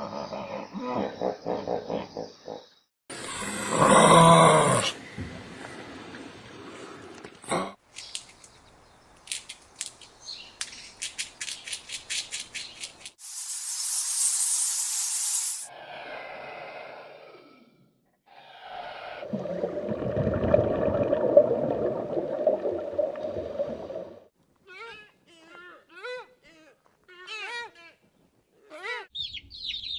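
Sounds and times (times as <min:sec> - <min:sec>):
animal hissing: 0:13.2 - 0:15.7.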